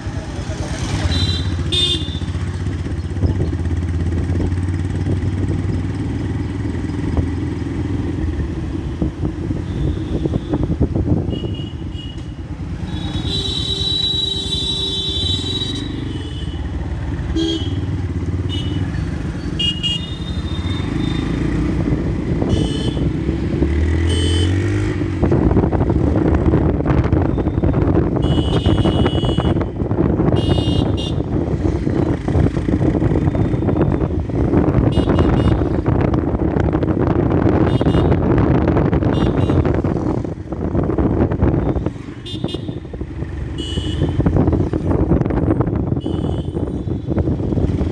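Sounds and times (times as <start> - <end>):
motorcycle engine running: 0.0 - 47.9
vehicle horns honking: 0.8 - 2.4, 9.6 - 21.6, 22.4 - 23.2, 23.9 - 24.9, 27.3 - 31.5, 33.4 - 36.0, 37.6 - 38.4, 39.0 - 40.1, 41.6 - 44.5, 45.9 - 47.4.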